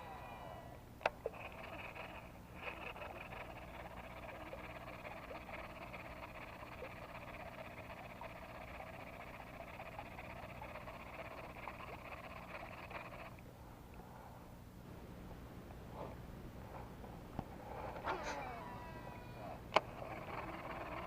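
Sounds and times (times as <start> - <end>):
chorus of frogs calling: 1.1 - 13.4, 18.0 - 21.0.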